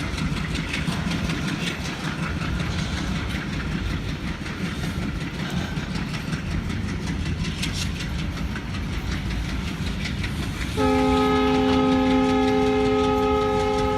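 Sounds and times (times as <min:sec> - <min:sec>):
train wagons rumbling past: 0:00.0 - 0:13.9
wheels clicking over rail joints: 0:00.0 - 0:13.9
locomotive horn: 0:10.8 - 0:13.9.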